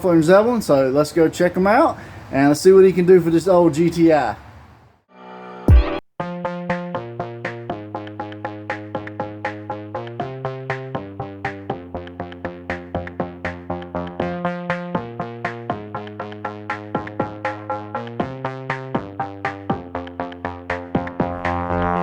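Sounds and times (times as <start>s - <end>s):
electronic music with synth notes: 5.1s - 22.0s.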